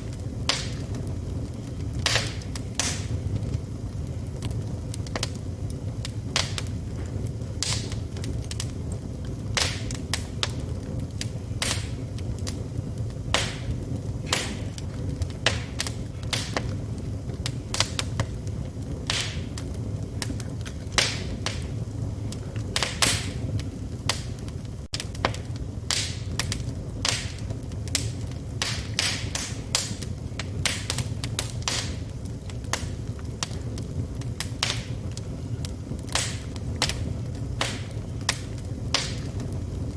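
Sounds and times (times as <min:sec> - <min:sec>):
fire crackling and popping: 0:00.0 - 0:39.9
low rumble of flames: 0:00.0 - 0:39.9.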